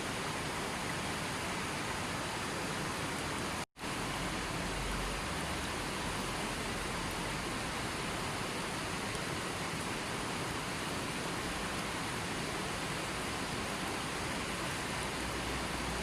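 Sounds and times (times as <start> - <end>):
river water flowing: 0.0 - 16.0.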